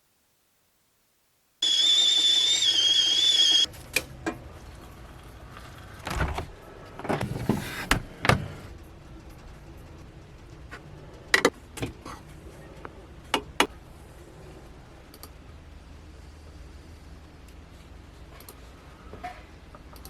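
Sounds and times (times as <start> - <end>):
loud shrill whistle: 1.6 - 3.7
knocks and clunks: 6.0 - 8.6.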